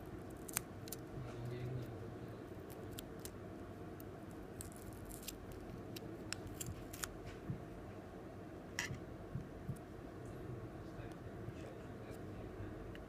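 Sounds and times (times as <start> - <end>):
low room hum: 0.0 - 13.0.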